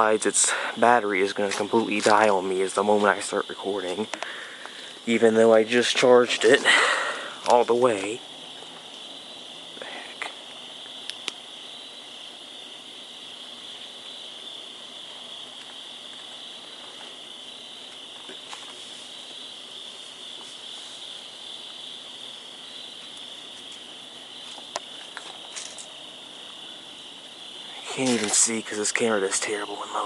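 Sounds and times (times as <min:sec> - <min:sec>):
crickets chirping: 0:00.0 - 0:30.0
sharp clicks: 0:11.0 - 0:11.4.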